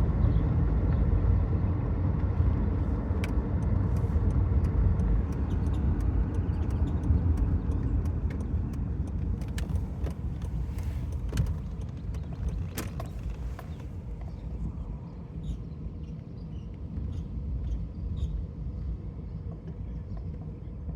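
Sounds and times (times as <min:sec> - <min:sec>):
road rumble: 0:00.0 - 0:20.9
wheel chirping and ticking: 0:03.2 - 0:14.5.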